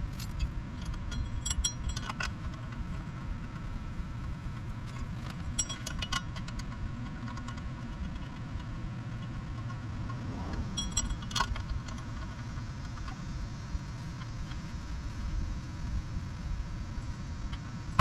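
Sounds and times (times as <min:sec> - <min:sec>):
metallic clinks of hand tools: 0:00.1 - 0:02.3
steady low rumble: 0:06.6 - 0:18.0.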